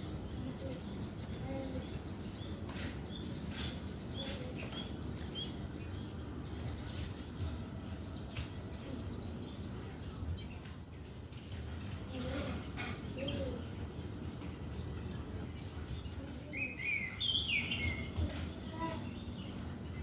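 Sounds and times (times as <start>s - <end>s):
faint bird chirps: 9.7s - 10.9s, 15.4s - 20.0s.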